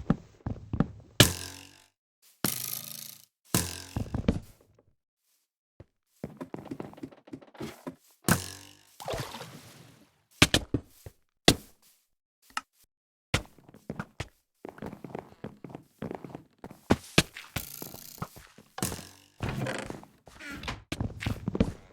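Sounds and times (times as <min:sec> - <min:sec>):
irregular thuds and knocks: 0:03.6 - 0:04.8, 0:06.2 - 0:09.4.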